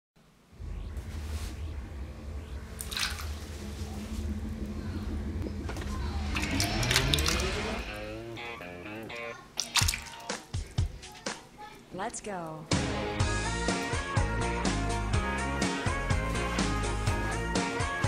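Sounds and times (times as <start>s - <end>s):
steady low hum: 0.2s - 9.6s
rising tones: 0.3s - 9.3s
water splashing and trickling: 2.8s - 3.9s, 6.2s - 8.1s, 9.6s - 10.5s.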